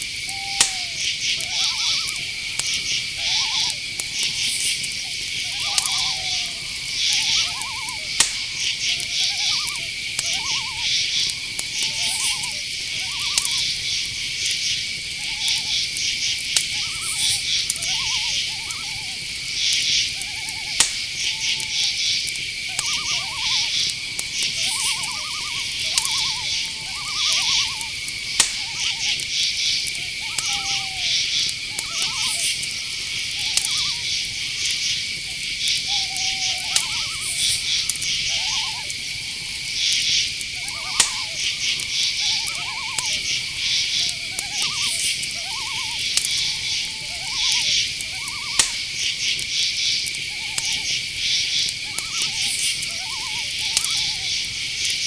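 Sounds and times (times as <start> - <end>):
sharp clicks: 0.0 - 14.2, 15.0 - 54.6
short repeated lower calls: 0.0 - 14.2, 16.6 - 49.2, 50.2 - 54.8
high cricket trill: 0.0 - 55.0
pulsed insect buzzing: 15.1 - 29.2.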